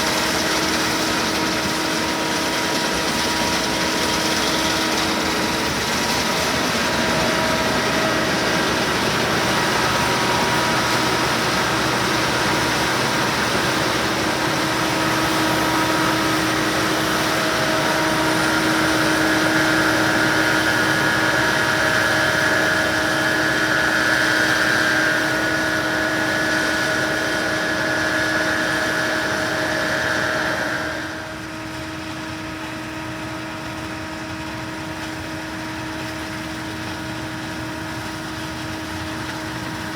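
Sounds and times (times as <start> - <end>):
machinery whining tones: 0.0 - 31.8
combine engine and machinery drone: 0.0 - 39.9.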